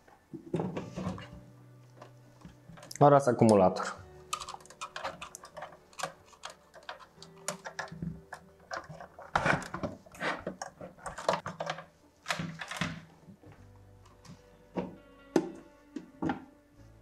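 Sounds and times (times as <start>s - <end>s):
clicks of connectors and wiring: 2.7s - 13.1s.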